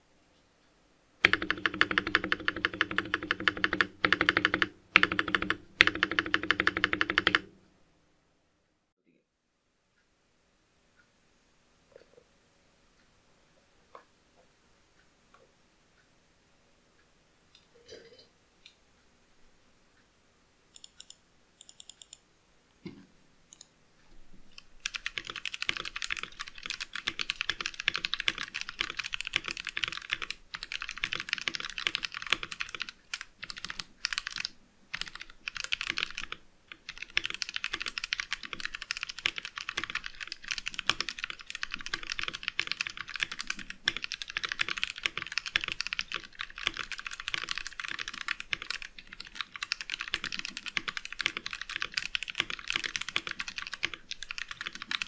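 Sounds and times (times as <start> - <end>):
fast typing on mechanical keyboard: 1.2 - 7.5, 24.5 - 55.0
keyboard clicks: 1.2 - 7.5, 20.7 - 22.2, 24.5 - 55.0.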